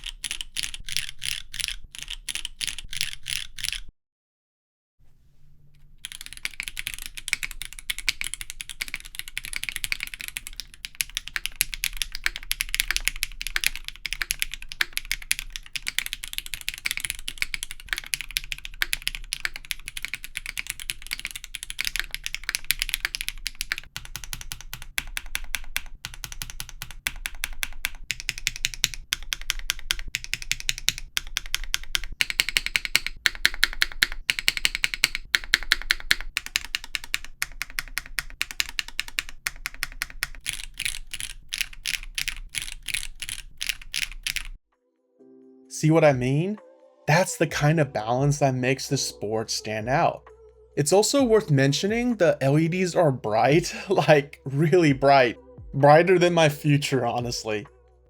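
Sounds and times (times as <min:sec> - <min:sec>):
mechanical keyboard typing: 0:00.0 - 0:03.9, 0:06.0 - 0:44.6.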